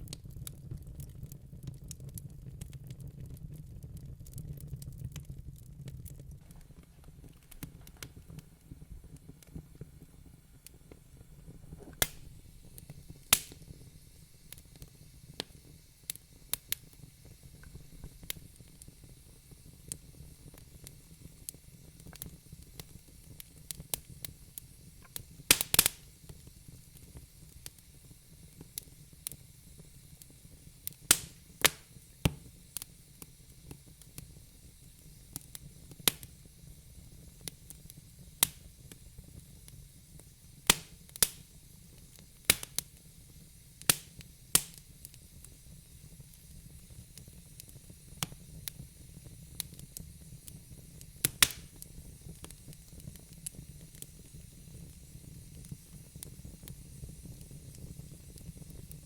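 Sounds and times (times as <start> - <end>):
fire crackling and popping: 0.0 - 59.0.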